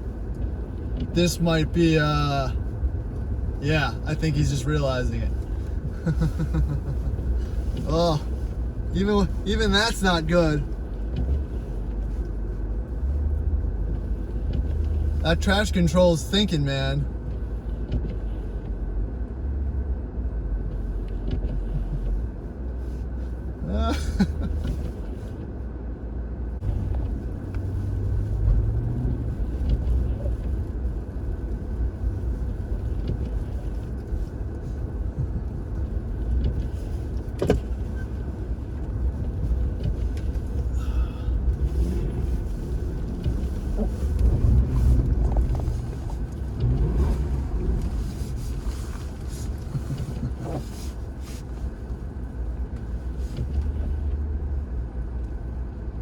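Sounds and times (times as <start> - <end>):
road and snow noise: 0.0 - 56.0
car engine revving: 26.6 - 30.9, 35.1 - 51.2.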